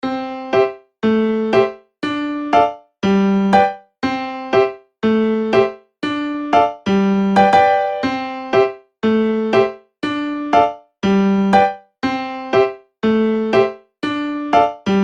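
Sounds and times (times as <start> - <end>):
simple keyboard tune: 0.0 - 15.0.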